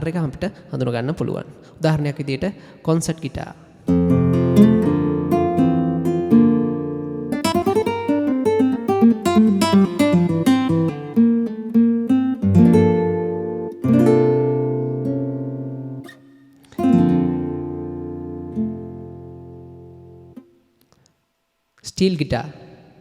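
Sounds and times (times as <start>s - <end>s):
sampled nylon-string guitar playing: 3.9s - 20.6s.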